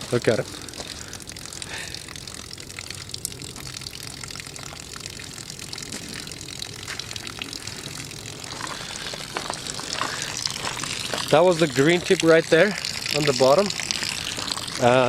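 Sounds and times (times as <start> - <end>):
low outdoor rumble: 0.0 - 15.0.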